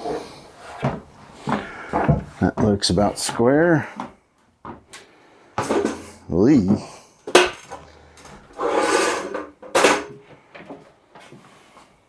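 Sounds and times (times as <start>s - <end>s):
scraping slide: 0.0s - 2.3s, 8.5s - 9.6s.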